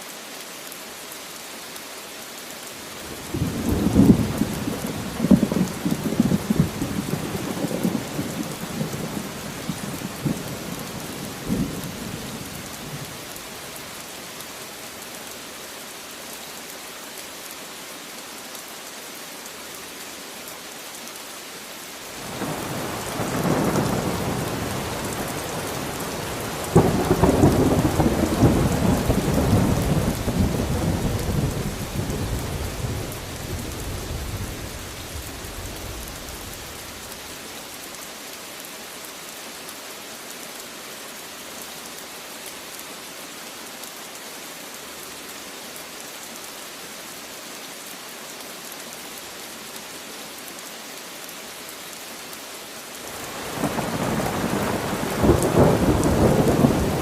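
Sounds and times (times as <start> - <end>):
steady rain: 0.0 - 57.0
rolling thunder: 53.5 - 57.0.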